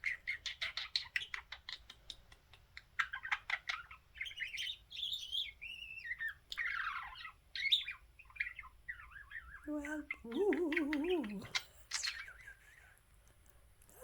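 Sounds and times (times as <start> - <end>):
budgerigar warbling and chattering: 3.0 - 12.9.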